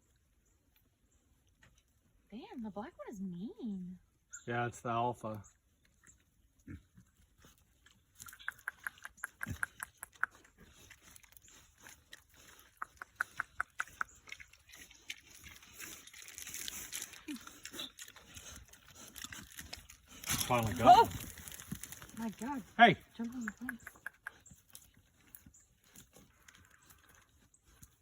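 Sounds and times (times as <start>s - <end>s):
pigs chomping: 5.9s - 28.0s
rustling and scuffling: 14.4s - 23.2s.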